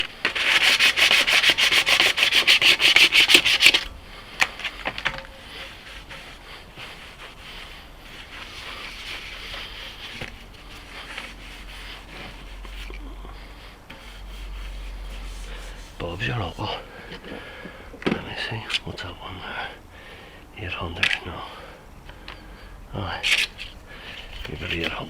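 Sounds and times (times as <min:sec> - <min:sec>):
sandpaper rubbing on metal: 0:00.0 - 0:03.9, 0:05.5 - 0:13.0, 0:13.9 - 0:16.8, 0:23.2 - 0:25.0.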